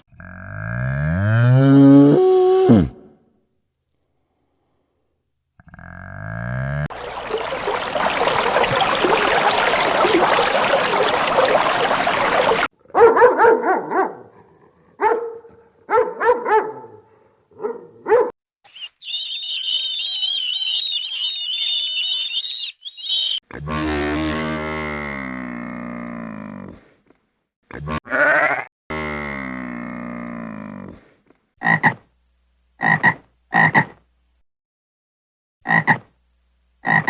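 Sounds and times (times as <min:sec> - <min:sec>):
dog barking: 0:12.9 - 0:18.4
high wavering whistle-like call: 0:18.7 - 0:23.4.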